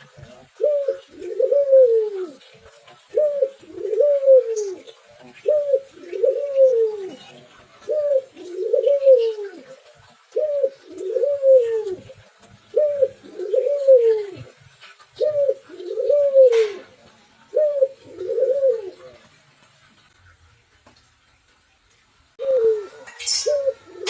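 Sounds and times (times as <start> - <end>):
dove cooing: 0.0 - 19.4, 22.4 - 24.0.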